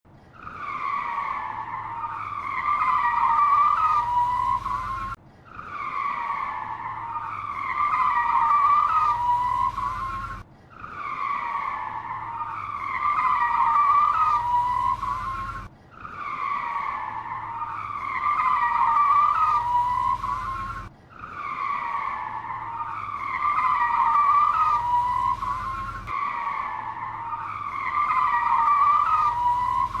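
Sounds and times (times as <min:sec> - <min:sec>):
car tyres squealing: 0:00.4 - 0:30.0
low rumble: 0:24.8 - 0:26.2.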